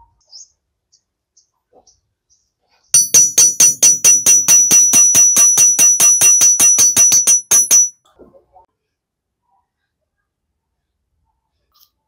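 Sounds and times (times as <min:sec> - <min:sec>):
hammer striking metal: 0:03.0 - 0:07.9.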